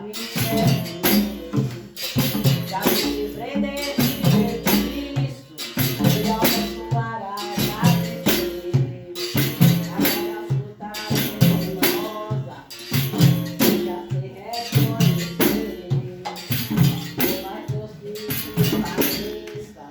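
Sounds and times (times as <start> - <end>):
hand percussion beat: 0.0 - 19.9
voices singing: 0.0 - 19.9.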